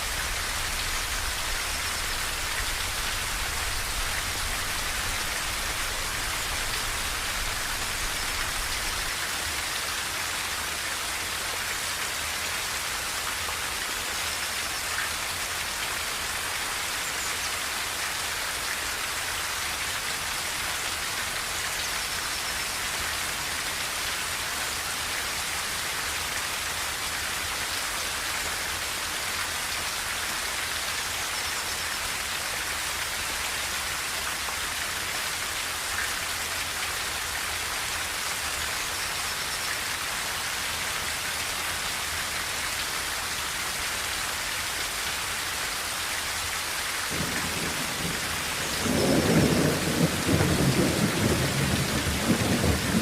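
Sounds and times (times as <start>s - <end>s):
rain on a tin roof: 0.0s - 53.0s.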